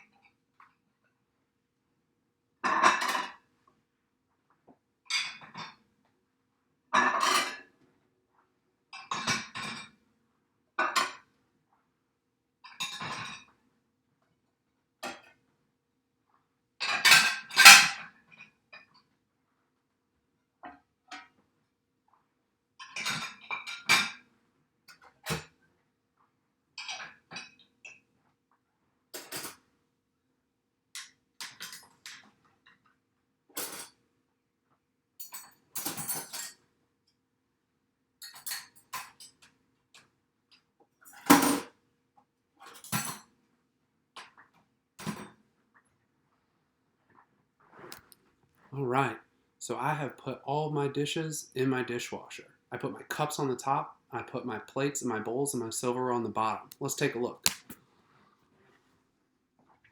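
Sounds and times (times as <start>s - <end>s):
dishes clinking and clattering: 16.8s - 18.0s.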